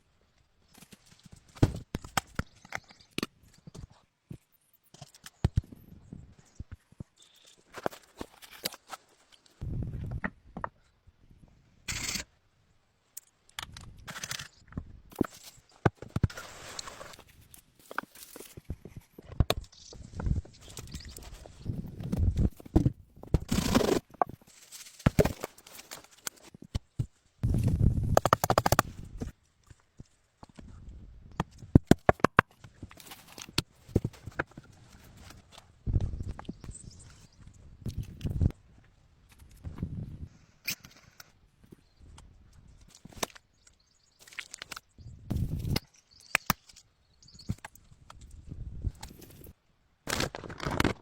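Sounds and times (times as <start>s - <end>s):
rustling: 23.4s - 26.5s.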